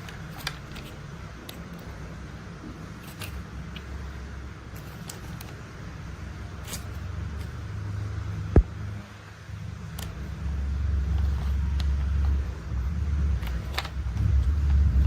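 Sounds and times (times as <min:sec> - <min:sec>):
toy vehicles clicking: 0:00.0 - 0:02.0, 0:02.9 - 0:04.0, 0:04.6 - 0:05.6.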